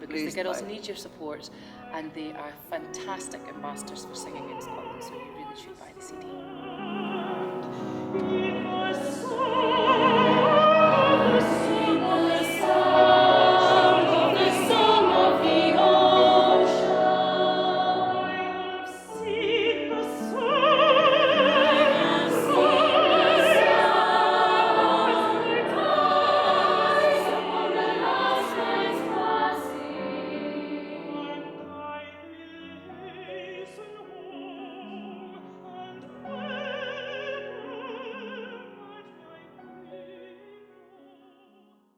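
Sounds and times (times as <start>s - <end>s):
piano: 0.0s - 41.9s
mezzo-soprano singing with vibrato: 1.8s - 41.6s
girls' choir singing: 3.7s - 31.7s.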